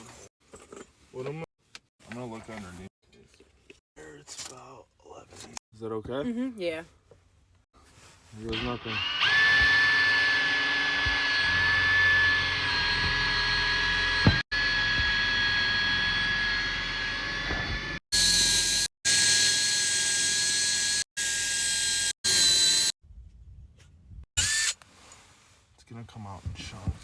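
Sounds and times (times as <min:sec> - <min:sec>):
electric drill whining: 0:08.8 - 0:23.0, 0:24.4 - 0:24.8.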